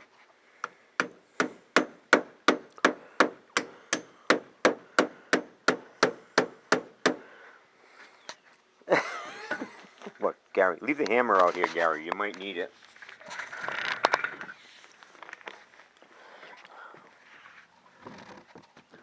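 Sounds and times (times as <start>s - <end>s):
hammer blows on a strip: 0.6s - 7.3s.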